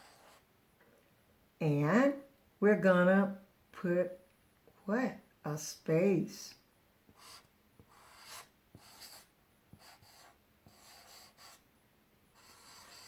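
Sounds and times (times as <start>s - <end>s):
pen scratching on paper: 0.0s - 0.4s, 7.1s - 11.6s, 12.4s - 13.0s.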